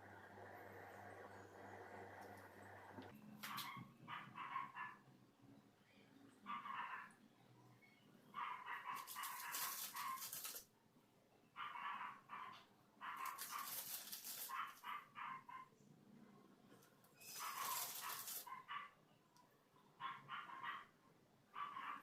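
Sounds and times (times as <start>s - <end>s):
dog barking: 3.5s - 5.0s, 6.5s - 7.1s, 8.4s - 10.3s, 11.6s - 13.8s, 14.4s - 15.7s, 17.4s - 19.0s, 20.0s - 22.0s.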